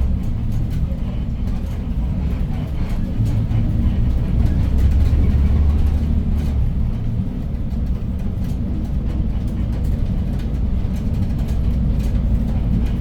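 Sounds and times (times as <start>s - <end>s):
bus drivetrain and road rumble: 0.0s - 13.0s.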